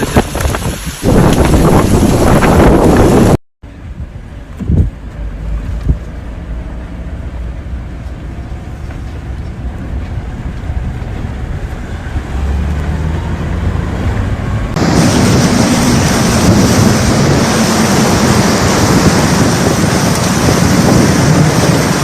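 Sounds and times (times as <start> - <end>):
storm downpour hiss: 0.0 - 4.0, 14.1 - 22.0
wind buffeting microphone: 0.0 - 6.1, 8.7 - 22.0.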